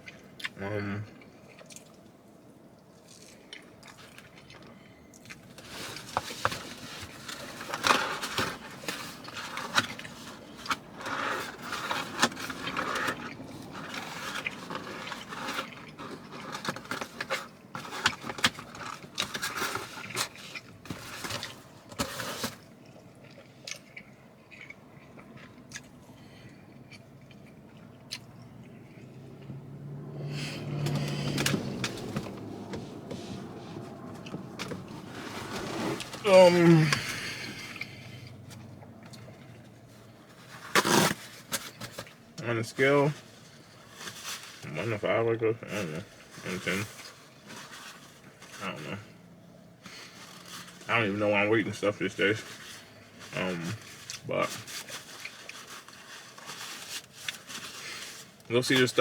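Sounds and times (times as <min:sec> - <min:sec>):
person chewing pizza: 0:00.0 - 0:41.0, 0:52.8 - 0:58.5
handling clicks and scraping: 0:05.4 - 0:22.7, 0:30.6 - 0:36.3.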